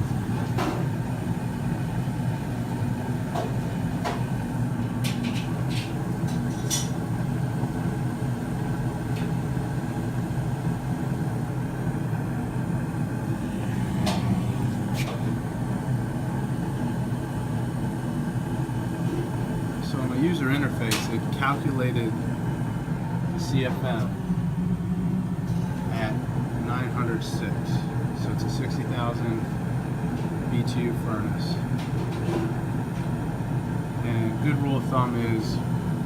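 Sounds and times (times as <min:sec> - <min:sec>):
furnace burner and blower drone: 0:00.0 - 0:36.0.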